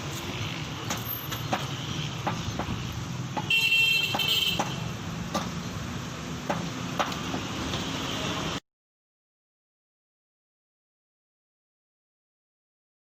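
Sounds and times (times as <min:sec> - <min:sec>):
low traffic rumble: 0:00.0 - 0:08.6
sharp knocks: 0:00.8 - 0:05.6, 0:06.4 - 0:07.5
vehicle horn: 0:03.4 - 0:04.9.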